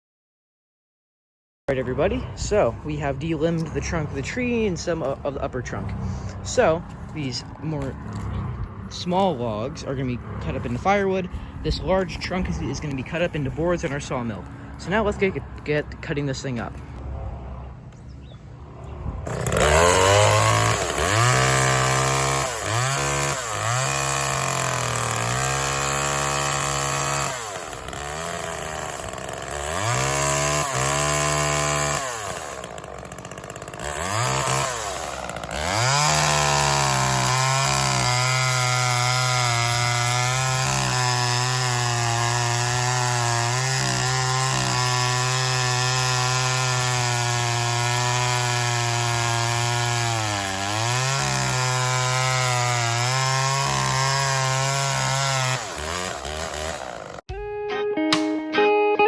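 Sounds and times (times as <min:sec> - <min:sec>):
chainsaw revving: 0:01.7 - 0:17.0, 0:19.2 - 0:57.3.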